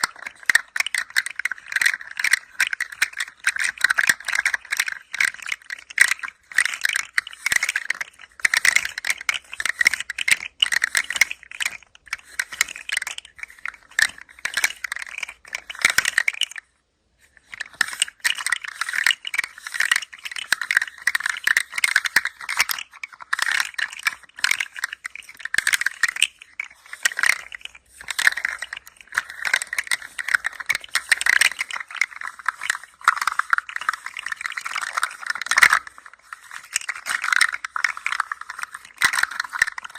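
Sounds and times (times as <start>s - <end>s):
toy rattling: 0.0s - 39.9s.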